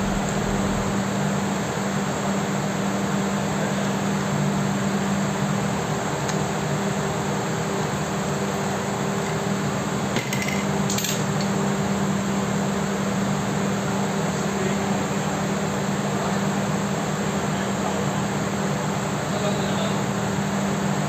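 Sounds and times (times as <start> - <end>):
machine hum: 0.0 - 1.3.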